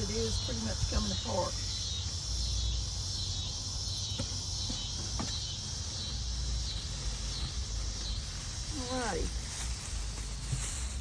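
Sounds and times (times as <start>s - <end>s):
cicadas buzzing: 0.0s - 11.0s.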